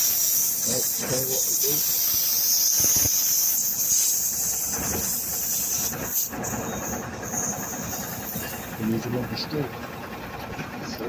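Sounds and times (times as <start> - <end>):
air hissing out of tyre: 0.0 - 8.8.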